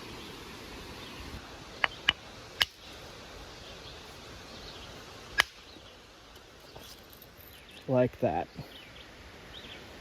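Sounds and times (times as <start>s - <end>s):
stone struck with sharp cracks: 5.4s - 5.6s.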